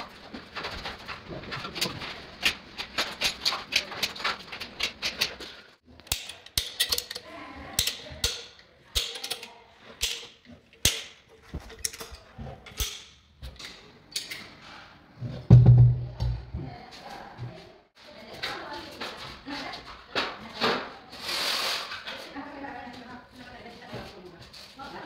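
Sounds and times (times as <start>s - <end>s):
hand tools clicking on ceramic tile: 1.8s - 13.2s.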